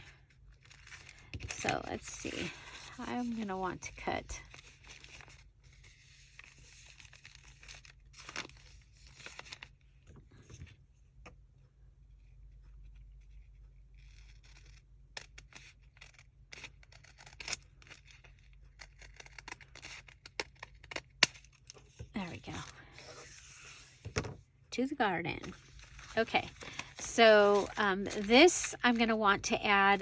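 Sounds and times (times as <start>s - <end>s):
paper rustling: 25.4s - 30.0s.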